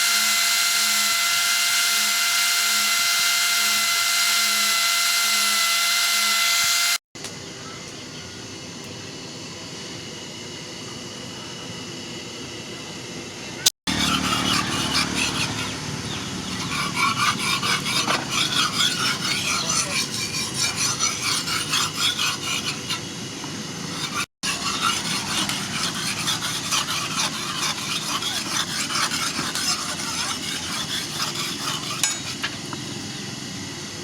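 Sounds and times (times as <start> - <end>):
abrasive scraping steel knife: 13.9 - 23.1, 23.9 - 32.6.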